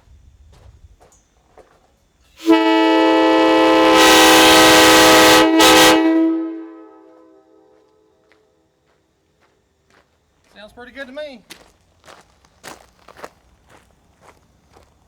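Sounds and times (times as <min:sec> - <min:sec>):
train horn blast: 0:02.4 - 0:08.2.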